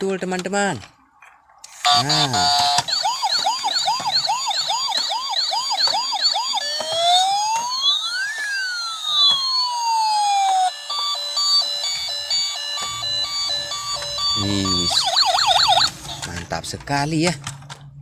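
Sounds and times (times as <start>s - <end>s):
toy fire truck electronic siren: 1.8s - 16.6s.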